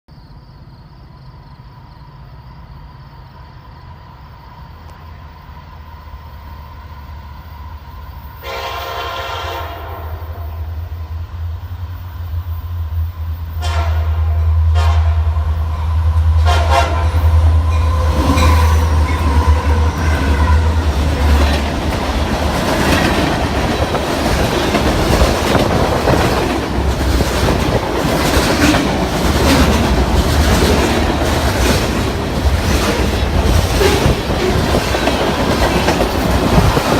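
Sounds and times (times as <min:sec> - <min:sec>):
diesel locomotive engine rumbling: 0:00.9 - 0:36.9
train air horn: 0:08.4 - 0:10.9, 0:13.5 - 0:15.4, 0:16.4 - 0:20.9
wheels clacking over rail joints: 0:16.2 - 0:36.9.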